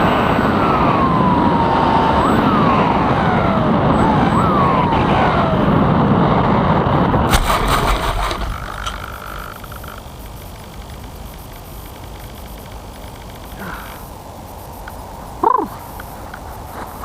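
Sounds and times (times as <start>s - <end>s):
air rushing over model plane: 7.1s - 9.7s
electric motor whining: 7.3s - 12.4s.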